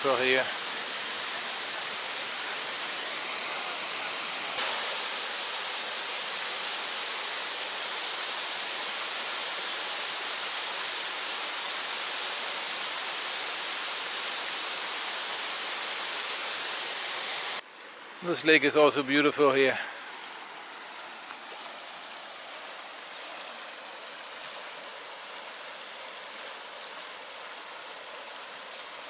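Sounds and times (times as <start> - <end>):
waterfall rushing: 0.0 - 17.6.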